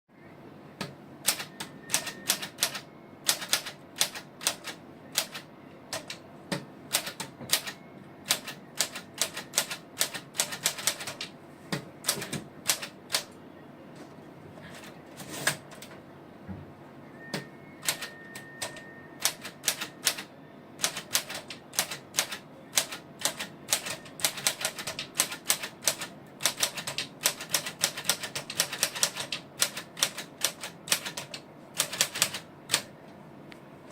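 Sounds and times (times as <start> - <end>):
typewriter keystroke clacks: 1.2 - 6.2, 6.9 - 11.3, 12.0 - 13.3, 19.2 - 32.9.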